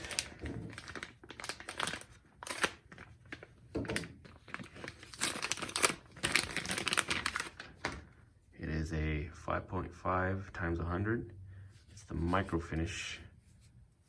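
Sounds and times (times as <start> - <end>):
packaging crinkling and tearing: 0.0 - 8.0.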